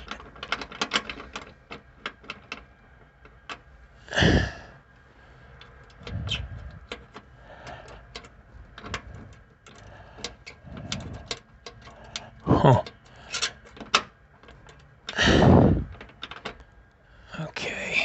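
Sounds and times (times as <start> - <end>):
metal tools clicking and knocking: 0.0 - 3.7, 5.6 - 15.2, 15.9 - 16.7.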